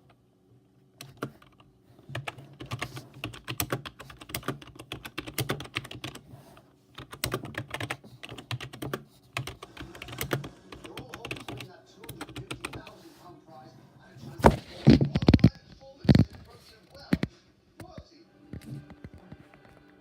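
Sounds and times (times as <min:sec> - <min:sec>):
keyboard typing clicks: 0:01.0 - 0:06.2, 0:07.0 - 0:12.8.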